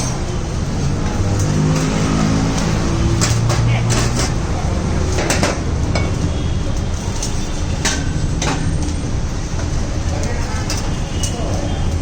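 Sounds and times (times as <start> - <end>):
loud background din: 0.0 - 12.0.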